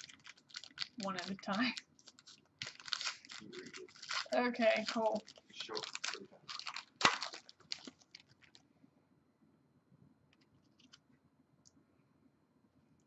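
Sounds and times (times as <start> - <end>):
wrapper crinkling: 0.0 - 8.6
wrapper tearing open: 0.0 - 8.6.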